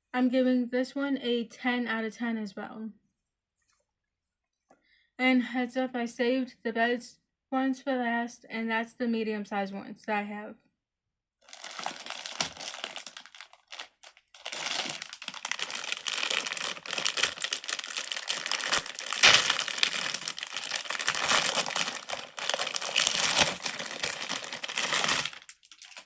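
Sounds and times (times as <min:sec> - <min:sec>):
plastic crinkling and rustling: 0:11.4 - 0:26.0.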